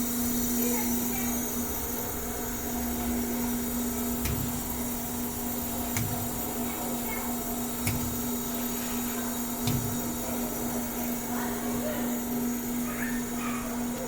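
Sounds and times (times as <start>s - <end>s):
machinery humming: 0.0s - 14.0s
machine clunk: 9.6s - 10.2s.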